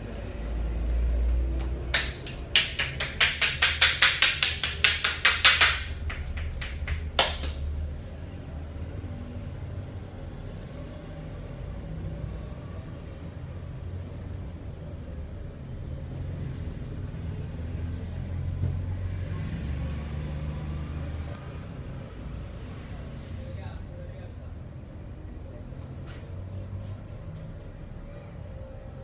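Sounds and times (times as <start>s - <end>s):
rapid hand slaps on head: 0.6s - 7.9s.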